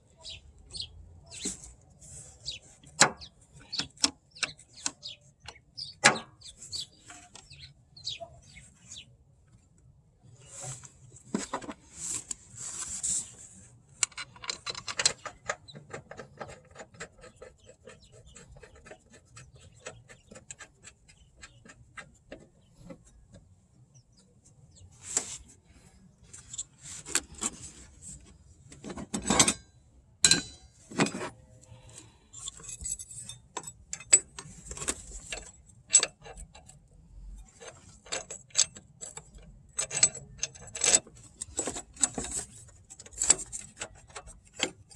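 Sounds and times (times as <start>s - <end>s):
tools clinking against metal: 29.1s - 31.2s.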